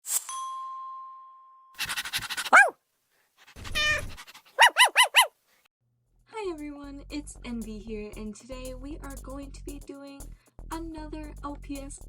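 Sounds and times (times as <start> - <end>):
high-pitched dog yaps: 1.8 - 2.8, 3.6 - 5.4
dog whining: 2.0 - 2.8, 3.6 - 5.3
dog barking: 2.4 - 2.8, 3.9 - 5.4
dog panting: 3.4 - 5.3.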